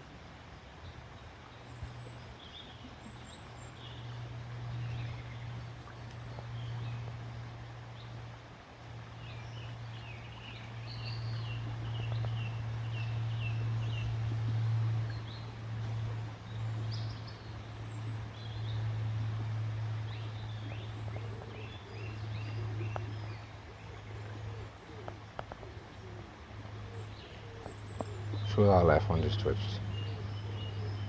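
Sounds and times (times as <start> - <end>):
small birds chirping: 0.6 - 8.2, 9.1 - 31.0
steady low rumble: 0.8 - 24.8.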